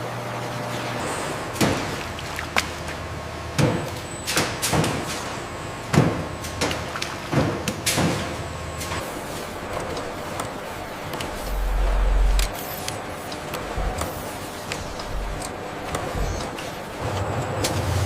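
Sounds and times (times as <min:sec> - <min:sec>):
machinery humming: 0:08.2 - 0:18.0.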